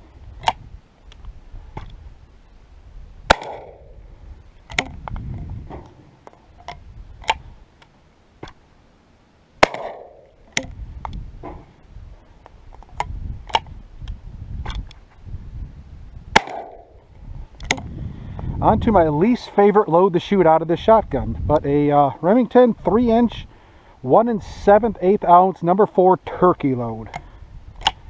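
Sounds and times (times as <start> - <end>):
shotgun shots with echo: 3.3 - 4.0, 9.6 - 10.2, 16.4 - 17.0.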